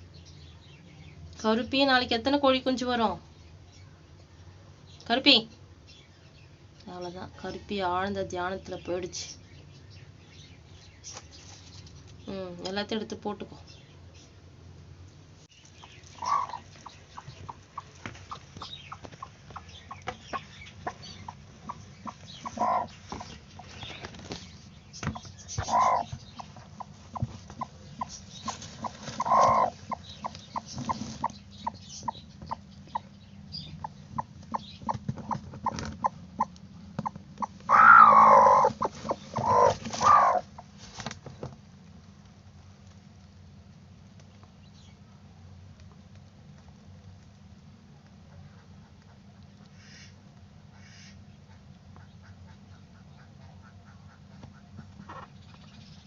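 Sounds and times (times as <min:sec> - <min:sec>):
hen clucking: 0:15.7 - 0:24.4, 0:25.0 - 0:40.8, 0:48.4 - 0:55.8.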